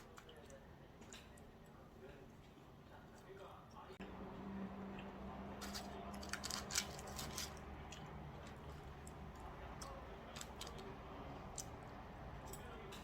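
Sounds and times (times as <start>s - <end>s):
fried chicken crunching: 4.9s - 12.0s.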